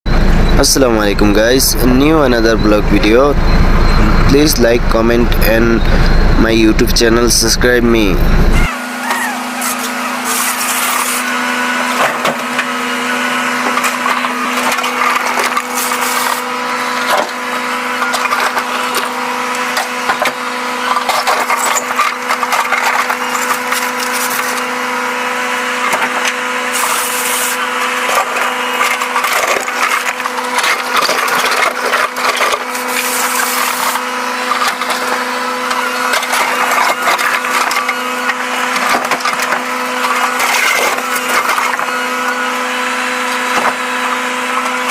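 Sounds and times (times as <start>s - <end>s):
excavator engine and hydraulics: 0.1s - 44.9s
crunching and cracking clatter: 10.3s - 24.7s, 25.6s - 44.9s.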